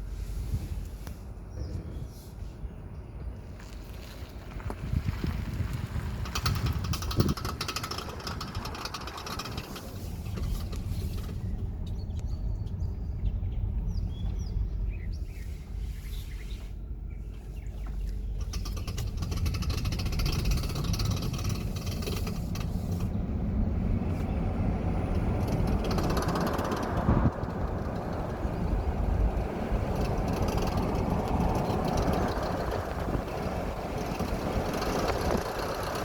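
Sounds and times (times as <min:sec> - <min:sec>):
car driving low rumble: 0:00.0 - 0:36.0
grinding knocking noise: 0:06.1 - 0:10.8, 0:18.3 - 0:23.1, 0:25.1 - 0:36.0
rapid clicking: 0:06.1 - 0:11.4, 0:18.3 - 0:23.2, 0:25.1 - 0:36.0.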